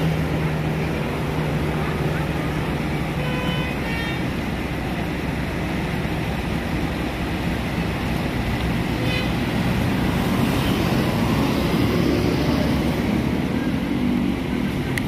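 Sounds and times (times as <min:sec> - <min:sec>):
road traffic rumble: 0:00.0 - 0:15.0
high horn-like tone: 0:03.2 - 0:04.3.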